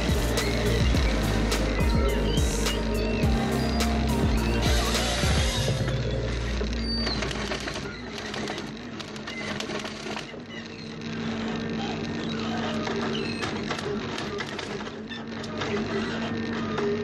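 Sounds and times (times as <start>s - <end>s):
bird chirping: 0.0s - 8.1s
machine humming: 0.0s - 17.0s
sharp clicks and cracks: 11.3s - 17.0s.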